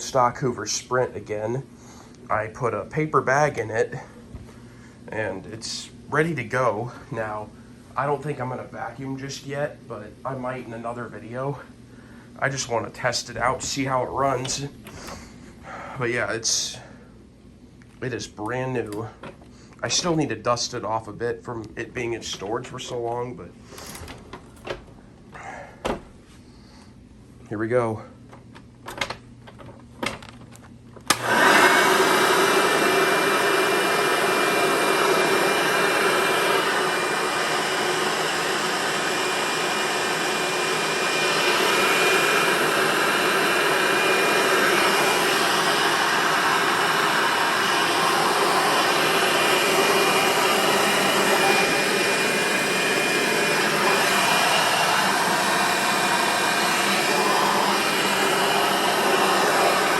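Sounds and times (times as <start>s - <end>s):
vacuum cleaner motor whining: 31.1s - 59.9s.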